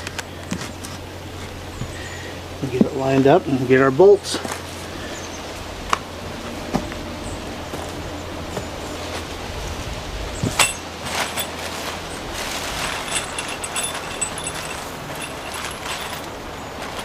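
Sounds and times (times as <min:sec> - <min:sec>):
metal bolts clinking: 0:10.5 - 0:11.8, 0:12.4 - 0:17.0.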